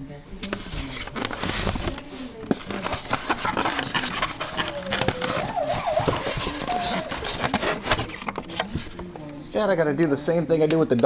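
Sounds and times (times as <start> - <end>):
dog whining: 3.9 - 7.4.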